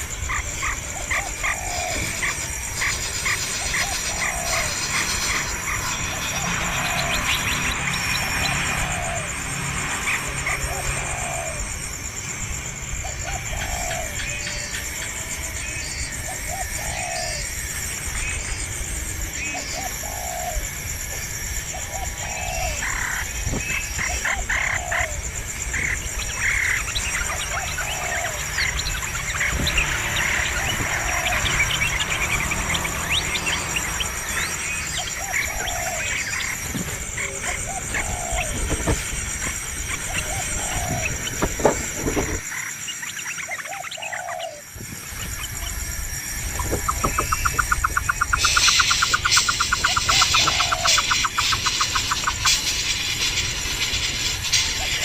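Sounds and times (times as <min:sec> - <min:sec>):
birds calling low notes: 0:00.0 - 0:55.0
loud noisy bird calls: 0:00.0 - 0:55.0
steady high hiss: 0:38.5 - 0:55.0.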